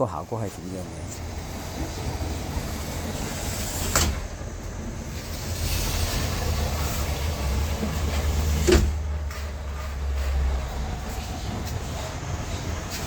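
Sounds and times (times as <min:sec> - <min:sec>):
traffic rumble: 0:00.0 - 0:13.0
sliding window shutting: 0:01.3 - 0:04.4, 0:05.0 - 0:10.4.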